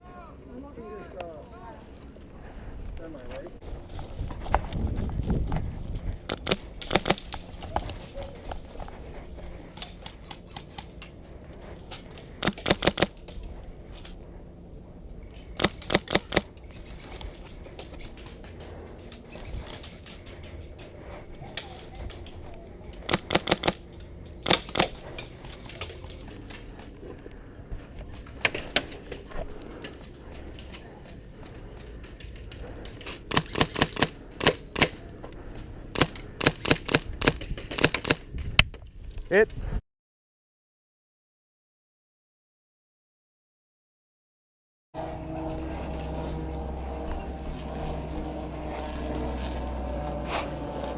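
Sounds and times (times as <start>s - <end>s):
airsoft guns firing: 6.2s - 14.1s, 15.4s - 26.2s, 33.3s - 35.0s, 35.9s - 38.2s
airsoft gun rapid bursts: 6.3s - 7.6s, 12.4s - 13.2s, 15.6s - 17.2s, 23.1s - 25.8s, 33.3s - 34.9s.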